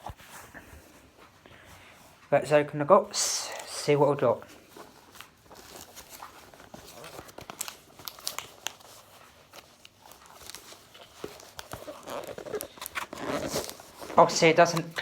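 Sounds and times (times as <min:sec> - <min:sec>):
packaging crinkling and tearing: 0:04.5 - 0:15.0.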